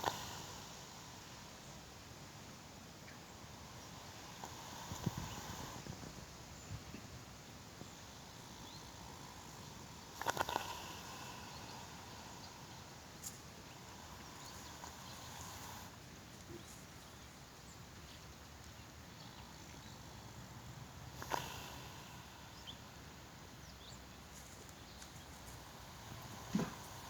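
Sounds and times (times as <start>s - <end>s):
horse snoring: 0.0s - 1.1s, 3.6s - 6.1s, 8.0s - 13.1s, 13.7s - 16.0s, 19.4s - 23.0s, 25.5s - 27.0s.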